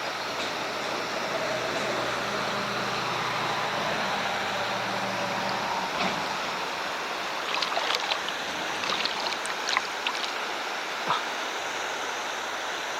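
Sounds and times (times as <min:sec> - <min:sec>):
river water rushing: 0:01.8 - 0:12.9
small splashes: 0:07.0 - 0:11.2.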